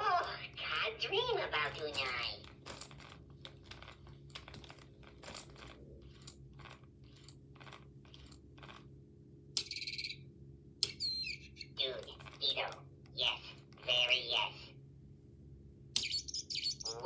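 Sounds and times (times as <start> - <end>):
buzzy high-pitched chirp: 9.6 - 10.3, 10.9 - 12.2, 16.0 - 17.0.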